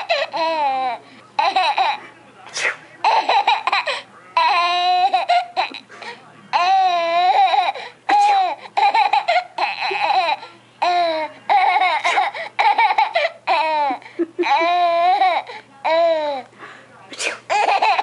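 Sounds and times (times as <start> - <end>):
baby laughing: 0.0 - 2.0, 3.0 - 5.8, 6.5 - 16.4, 17.5 - 18.0.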